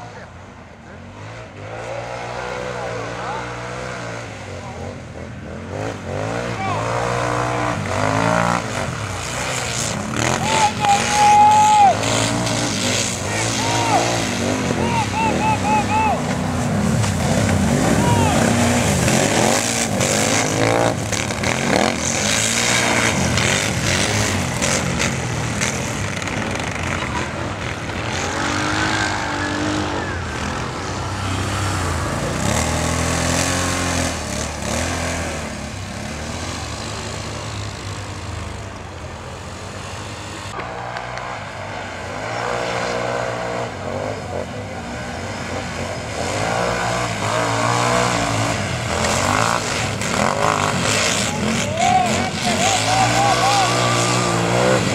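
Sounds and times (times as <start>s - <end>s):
atv engines revving hard: 0.0s - 54.9s
engines and tyres noise: 0.0s - 54.9s.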